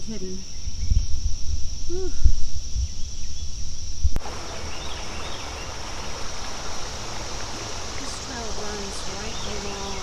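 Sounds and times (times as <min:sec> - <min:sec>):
birds chirping: 0:04.2 - 0:10.0
creek flowing: 0:04.2 - 0:10.0
high-pitched insect drone: 0:04.2 - 0:10.0.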